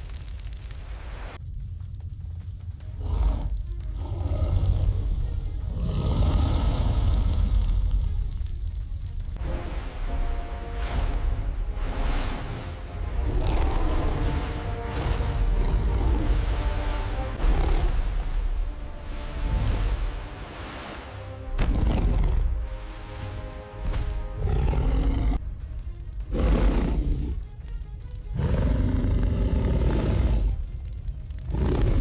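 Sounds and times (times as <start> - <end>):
heavy deep rumble: 0.4 - 32.0
dramatic background music: 1.4 - 32.0
deep monster roars: 5.7 - 7.9, 13.1 - 18.6.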